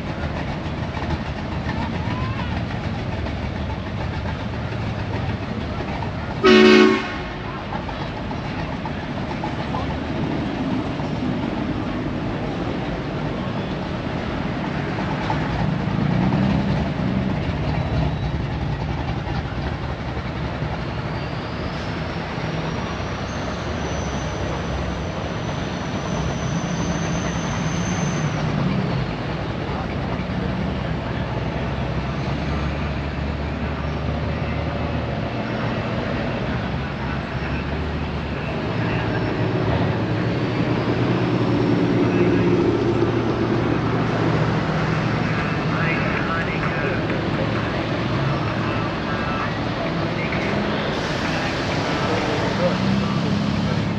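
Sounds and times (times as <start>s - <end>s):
cars driving by: 0.0s - 53.9s.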